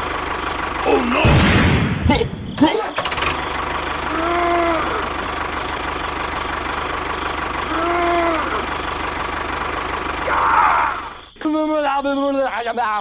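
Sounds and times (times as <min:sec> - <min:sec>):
engine idling: 0:03.0 - 0:11.4.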